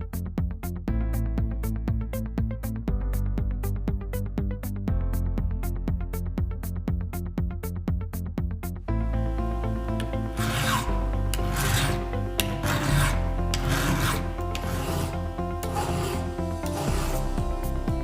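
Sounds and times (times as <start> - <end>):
background music: 0.0 - 18.0
file rasping on chainsaw chain: 10.4 - 17.3.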